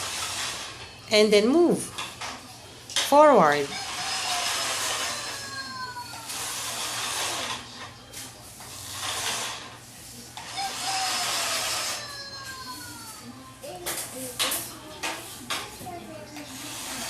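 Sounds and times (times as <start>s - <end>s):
small electric motor whirring: 3.6s - 7.7s, 10.4s - 13.2s.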